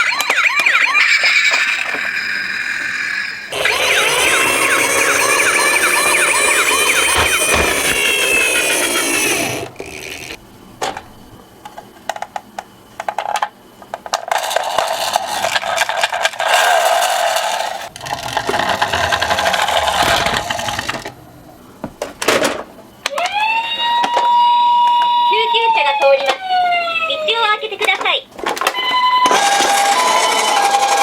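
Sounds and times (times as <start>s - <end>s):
toy electronic siren: 0.0s - 10.4s, 23.1s - 27.4s, 28.8s - 31.0s
toy cars rattling and clicking: 3.5s - 10.4s, 13.0s - 21.1s.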